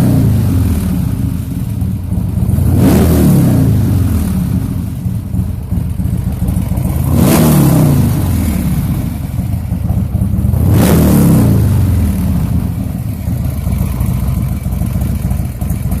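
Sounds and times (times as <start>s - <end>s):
motorcycle engine idling and revving: 0.0s - 16.0s.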